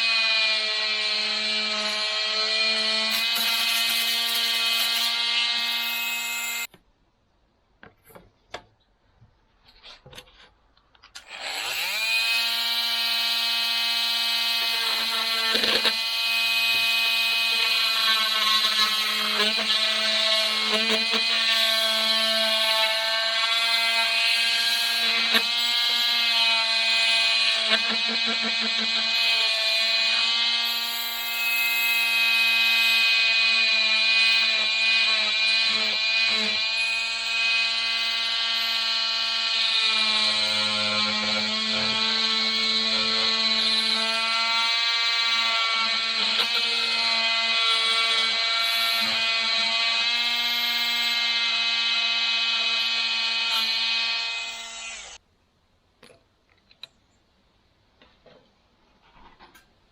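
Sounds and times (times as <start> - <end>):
oscillating multi-tool running: 52.2 - 55.2.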